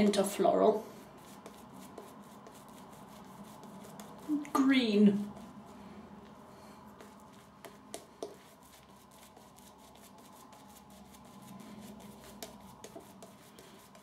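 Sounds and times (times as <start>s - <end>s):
shaving brush lathering on skin: 7.0s - 14.0s.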